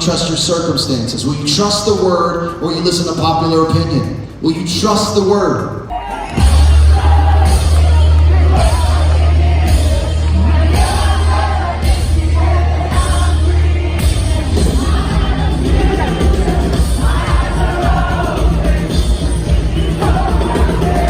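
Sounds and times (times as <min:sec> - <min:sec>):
singing: 0:05.9 - 0:21.0.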